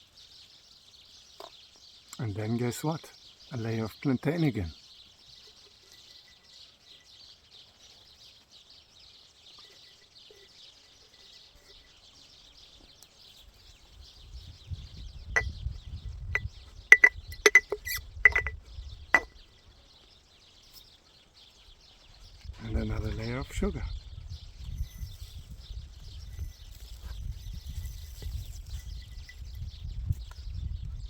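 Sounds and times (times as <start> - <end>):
glass jar clinking: 16.9 - 18.6
leaves rubbing and rustling: 24.6 - 29.4.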